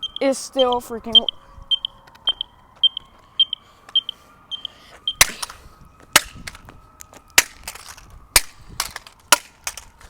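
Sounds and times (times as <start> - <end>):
smoke detector beep: 0.0 - 5.4.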